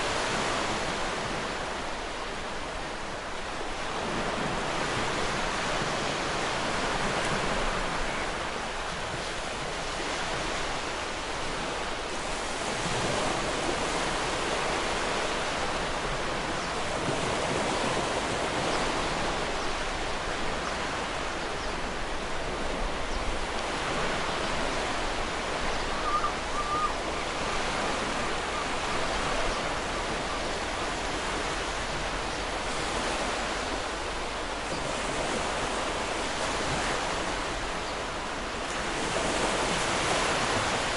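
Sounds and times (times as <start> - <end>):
ocean waves breaking: 0.0 - 40.9
faint gull call: 25.8 - 27.4.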